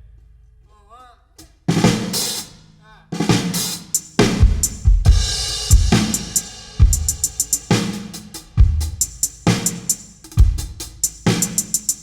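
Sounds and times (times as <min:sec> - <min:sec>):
snare drum hits: 0:03.3 - 0:08.4
light cymbal strikes: 0:03.5 - 0:12.0
cymbal crash: 0:03.6 - 0:10.0
bass drum thuds: 0:04.2 - 0:09.2, 0:10.4 - 0:11.0.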